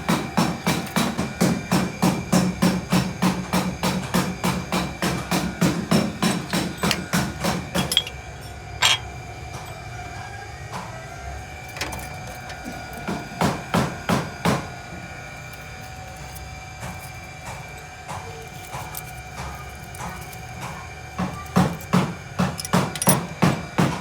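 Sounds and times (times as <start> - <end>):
hammer striking metal: 5.0 - 9.2.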